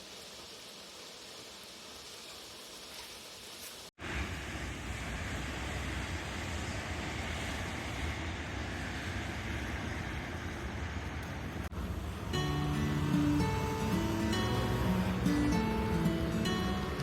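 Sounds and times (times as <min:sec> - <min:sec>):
moving vehicle rumble: 0:04.0 - 0:17.0
guitar music: 0:11.8 - 0:17.0.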